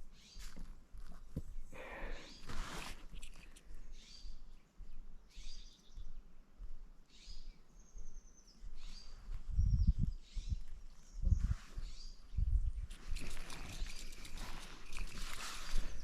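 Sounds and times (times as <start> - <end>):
high bird trill: 12.8 - 16.0.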